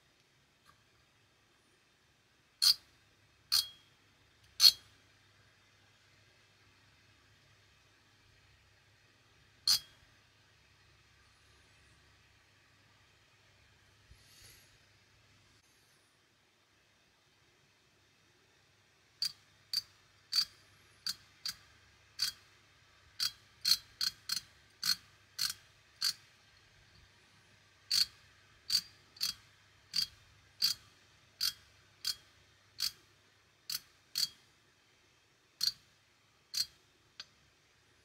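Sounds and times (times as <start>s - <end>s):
ratchet handle clicking: 33.7s - 34.4s.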